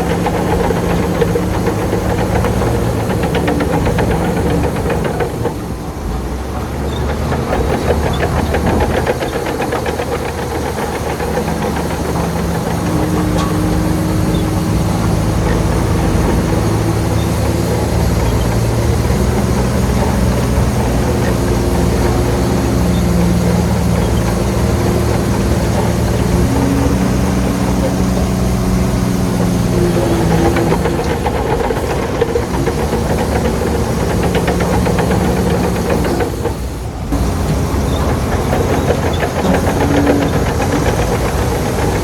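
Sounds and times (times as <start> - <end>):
fast rattling clatter: 0.0 - 42.0
heavy machinery diesel engine: 0.0 - 42.0.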